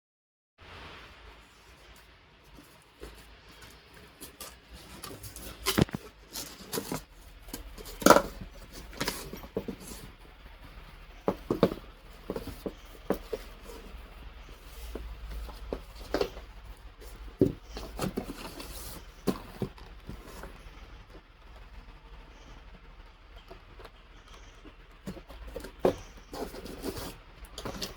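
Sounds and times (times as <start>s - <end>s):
tool kit clicking and knocking: 5.6s - 10.1s.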